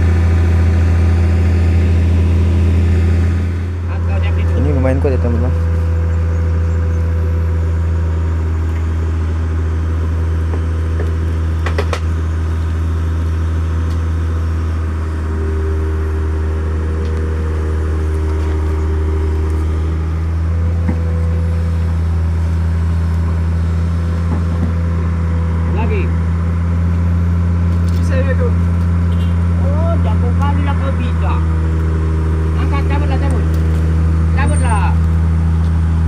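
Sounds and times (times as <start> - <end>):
excavator diesel engine running: 0.0 - 36.0.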